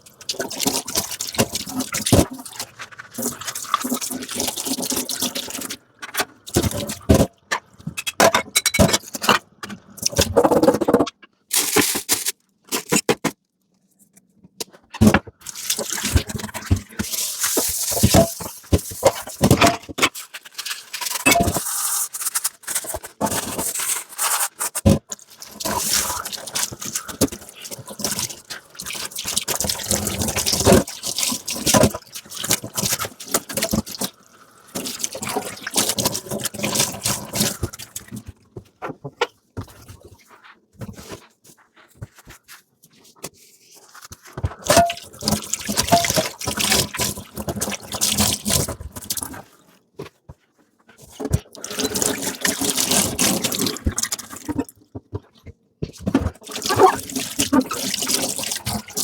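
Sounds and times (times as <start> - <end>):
running water: 0.0 - 5.7, 25.2 - 38.3
dishes clinking: 8.0 - 9.3.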